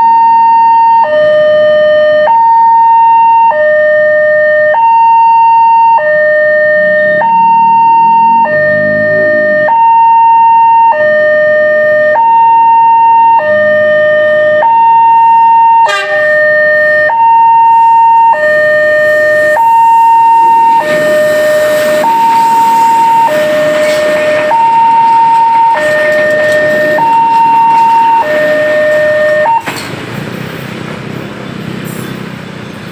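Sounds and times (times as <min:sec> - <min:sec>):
two-tone level-crossing siren: 0:00.0 - 0:29.7
broad noise: 0:15.6 - 0:32.9.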